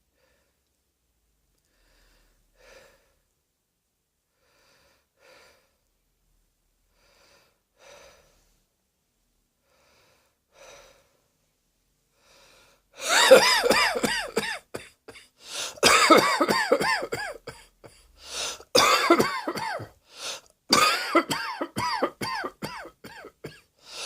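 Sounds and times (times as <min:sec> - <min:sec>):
person breathing slowly: 0:00.1 - 0:00.7, 0:01.6 - 0:03.3, 0:04.3 - 0:05.9, 0:06.9 - 0:08.7, 0:09.6 - 0:11.4, 0:12.1 - 0:13.2, 0:15.4 - 0:15.8, 0:17.9 - 0:18.7, 0:20.0 - 0:20.6, 0:23.8 - 0:24.0.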